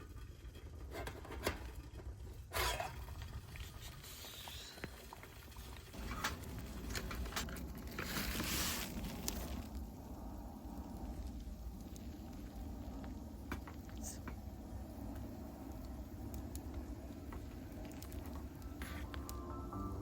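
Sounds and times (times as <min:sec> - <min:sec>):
rustling: 0:02.9 - 0:09.9.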